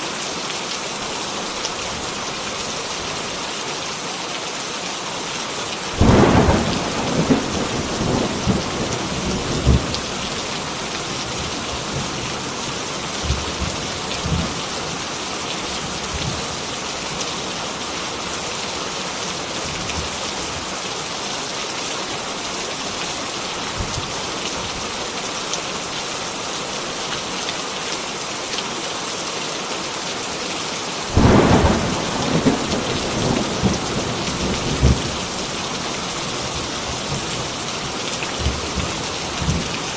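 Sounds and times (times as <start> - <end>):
heavy rain: 0.0 - 39.9
thunder rumbling: 6.0 - 12.2, 31.1 - 39.8.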